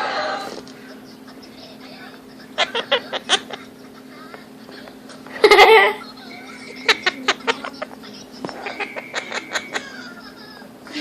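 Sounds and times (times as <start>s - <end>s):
parrot laughing: 2.3s - 11.0s.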